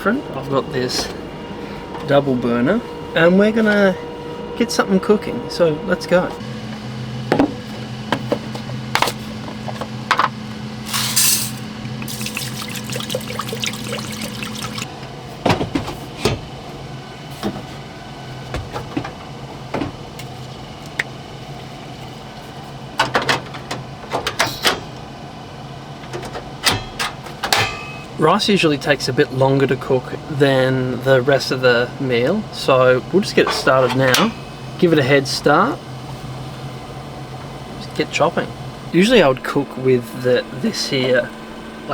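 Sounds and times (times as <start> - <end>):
low steady hum: 0.0 - 15.1
pots and utensils clanking: 9.0 - 14.9, 26.2 - 28.1, 33.4 - 34.6
water pouring into pot: 10.9 - 14.9.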